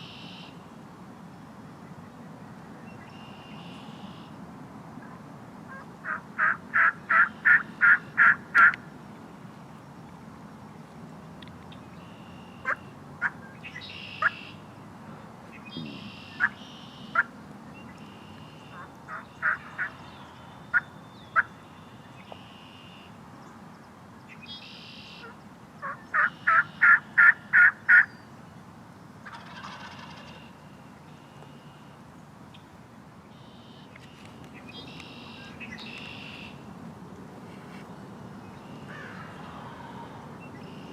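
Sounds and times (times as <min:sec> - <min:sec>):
songbirds chirping: 0:00.0 - 0:04.4, 0:05.0 - 0:40.9
turkey yelping: 0:15.8 - 0:17.3, 0:18.7 - 0:20.0, 0:25.8 - 0:28.1, 0:29.3 - 0:30.4.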